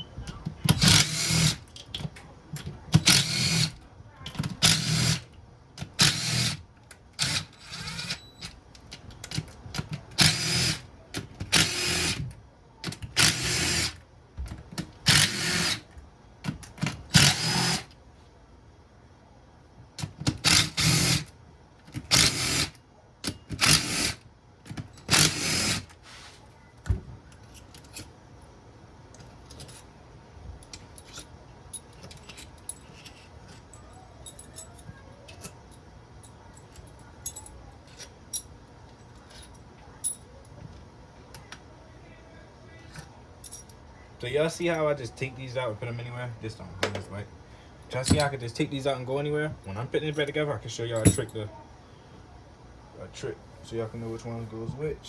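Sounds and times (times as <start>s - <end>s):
power drill spinning bolts: 0.8s - 1.6s, 3.0s - 3.8s, 23.6s - 24.2s, 25.0s - 25.8s
faint clicks of parts handled: 29.1s - 29.9s.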